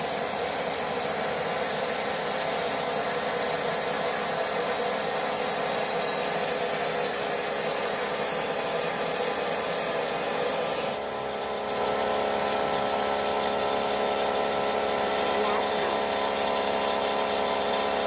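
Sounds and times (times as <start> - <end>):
vapor blasting cabinet hissing: 0.0 - 11.1.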